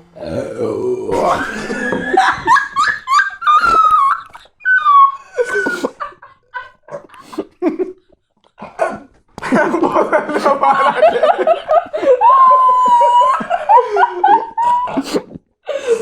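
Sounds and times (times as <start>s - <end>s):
high-pitched laughter: 1.2s - 8.1s, 9.6s - 15.1s.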